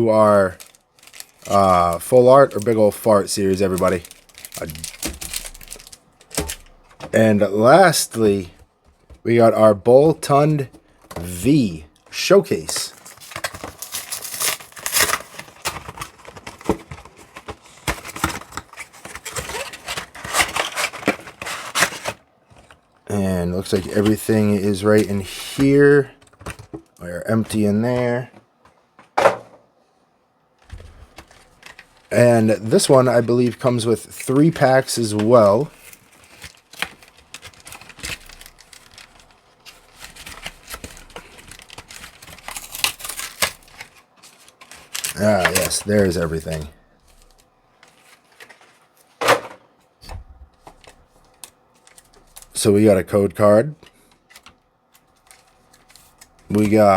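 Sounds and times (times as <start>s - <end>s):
plastic wrap crinkling and tearing: 0.2s - 7.0s, 12.1s - 22.2s, 31.0s - 49.0s, 50.7s - 52.7s, 54.1s - 56.9s.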